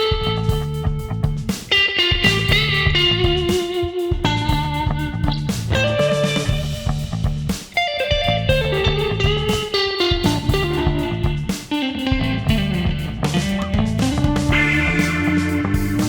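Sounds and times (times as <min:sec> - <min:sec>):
bass line: 0:00.0 - 0:16.0
electric guitar playing notes: 0:07.8 - 0:16.0.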